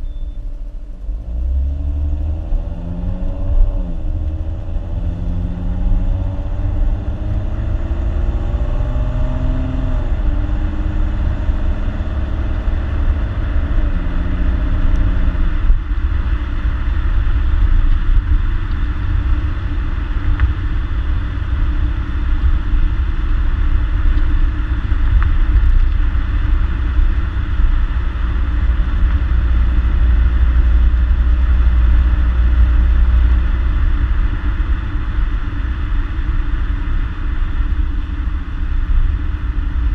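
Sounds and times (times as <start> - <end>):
road noise: 0.0 - 39.9
car engine accelerating through gears: 1.0 - 18.0.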